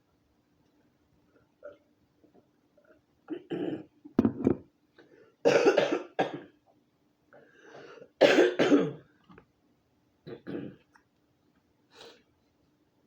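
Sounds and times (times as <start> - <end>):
woman coughing: 5.5 - 6.5, 8.2 - 9.0.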